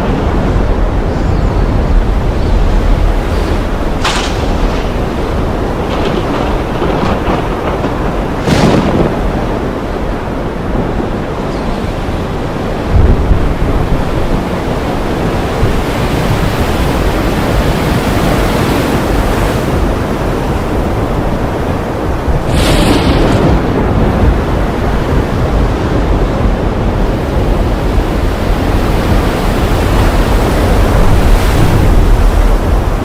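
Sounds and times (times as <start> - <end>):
deep rumble: 0.0 - 9.8
heavy rain pouring: 0.0 - 33.0
sharp burst of noise: 22.5 - 23.8.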